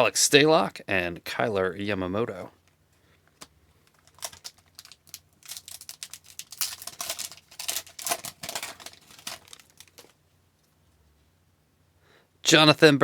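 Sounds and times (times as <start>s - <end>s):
foil wrapper crackling: 3.8s - 10.2s.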